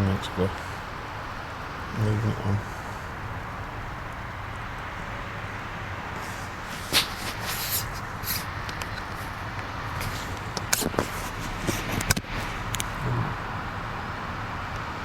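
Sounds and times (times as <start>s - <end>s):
steady hiss: 0.0s - 14.6s
handling clicks and rustles: 6.1s - 13.0s.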